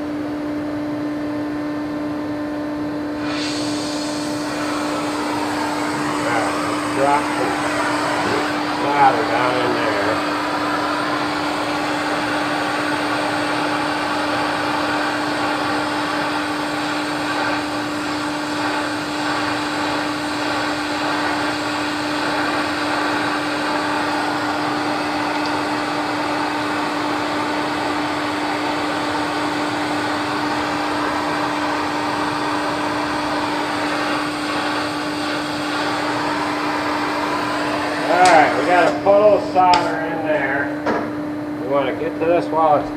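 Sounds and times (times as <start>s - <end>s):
torch hissing: 3.2s - 40.7s.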